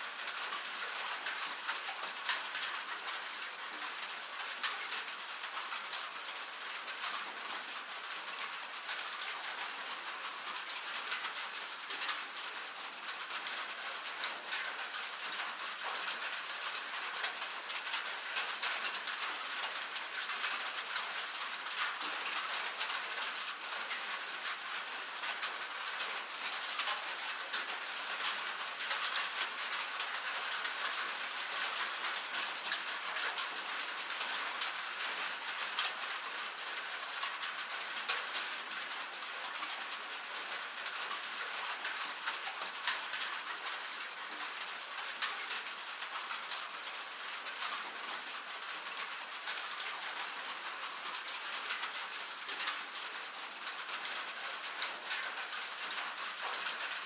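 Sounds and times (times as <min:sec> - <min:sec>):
rain on a metal roof: 0:00.0 - 0:57.0.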